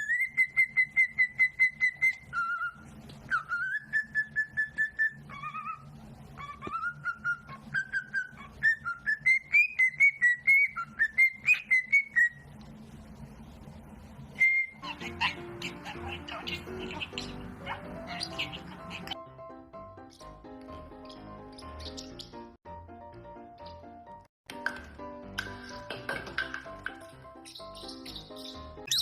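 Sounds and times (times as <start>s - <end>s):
parrot whistling: 0.0s - 12.4s, 14.4s - 19.2s, 20.7s - 22.5s, 27.4s - 29.0s.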